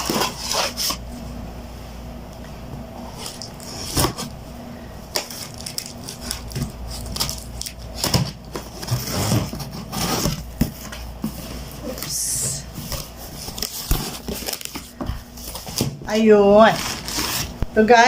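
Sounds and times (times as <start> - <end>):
packaging crinkling and tearing: 5.1 - 10.8, 12.8 - 16.0.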